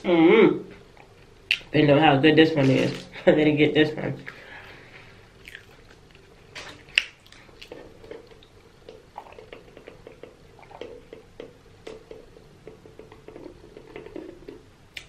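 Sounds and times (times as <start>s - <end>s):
person chewing cookie: 5.3s - 12.2s.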